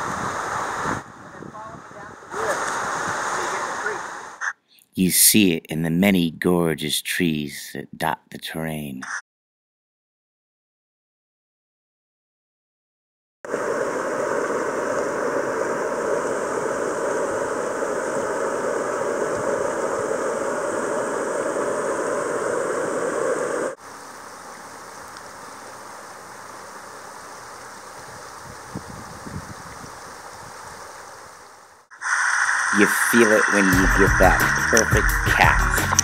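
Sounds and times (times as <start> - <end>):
stream water rushing: 0.0 - 1.0, 2.3 - 4.4, 32.0 - 36.0.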